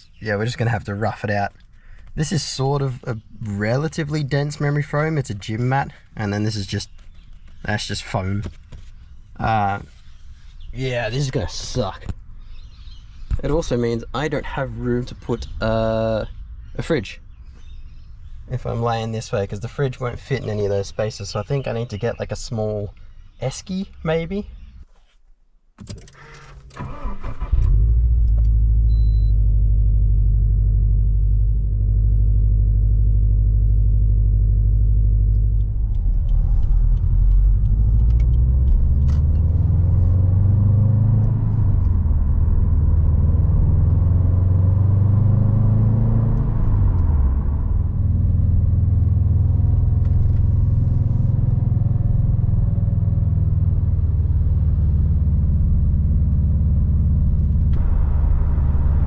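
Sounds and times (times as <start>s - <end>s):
car engine drone: 0.0s - 22.0s, 26.0s - 59.0s
road noise: 0.0s - 25.0s, 26.2s - 59.0s.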